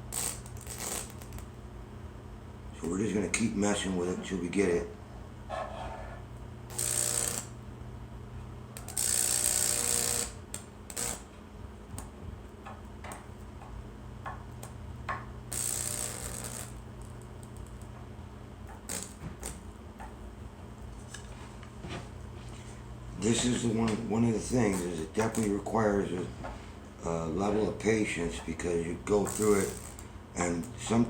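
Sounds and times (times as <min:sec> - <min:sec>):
electricity arcing and crackling: 0:00.0 - 0:01.5, 0:06.7 - 0:07.6, 0:08.8 - 0:11.3, 0:15.5 - 0:17.9, 0:18.7 - 0:19.7, 0:23.4 - 0:26.1, 0:29.1 - 0:31.0
hissing sizzle bursts: 0:15.5 - 0:16.8, 0:18.9 - 0:19.6.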